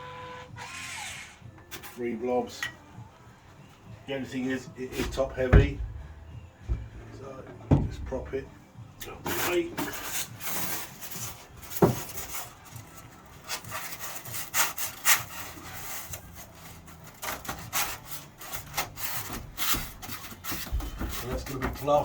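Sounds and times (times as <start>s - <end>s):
boards scraping on wood: 4.8s - 8.4s, 9.2s - 22.0s.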